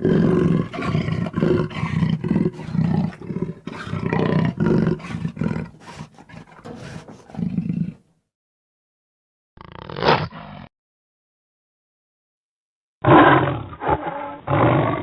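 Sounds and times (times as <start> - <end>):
dinosaur roars and growls: 0.0 - 8.0, 13.0 - 15.0.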